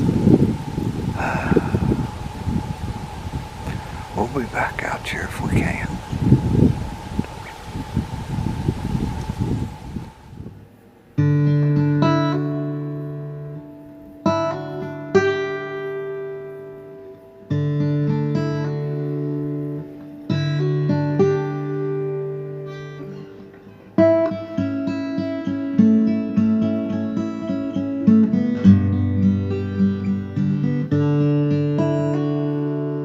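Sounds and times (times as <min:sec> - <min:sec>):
acoustic guitar strumming: 0:11.2 - 0:33.0.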